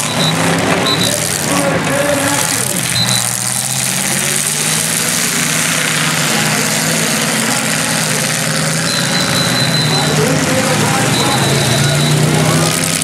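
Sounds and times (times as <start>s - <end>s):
car engines running: 0.0s - 13.0s
thin high tone: 8.8s - 12.2s.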